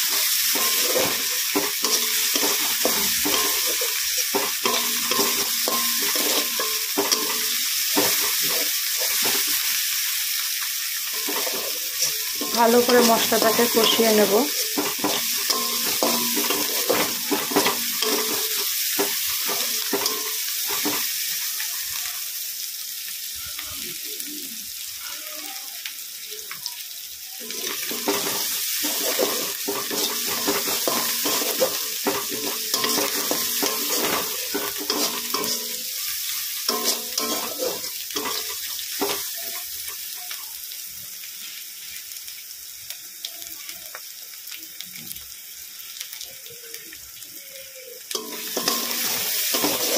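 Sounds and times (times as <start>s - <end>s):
spatula stirring and scraping: 0.0s - 9.6s, 11.1s - 21.0s, 27.5s - 39.2s, 48.1s - 49.9s
onions sizzling in oil: 0.0s - 49.9s.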